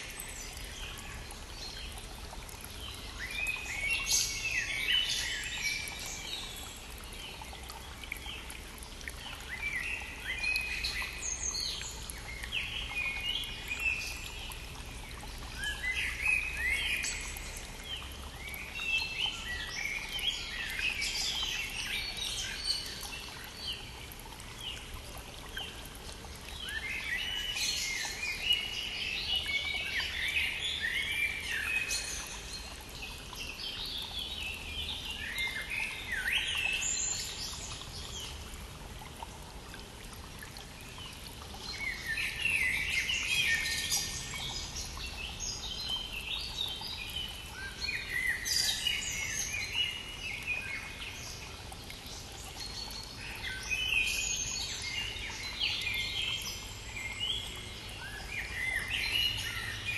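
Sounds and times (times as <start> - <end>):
songbirds chirping: 0.0 - 59.9.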